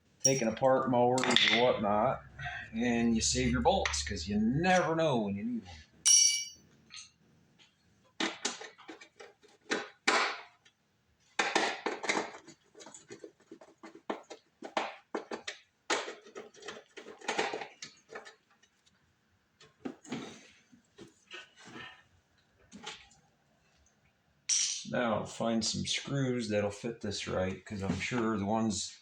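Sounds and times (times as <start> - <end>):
metal screws rattling: 6.1 - 7.0.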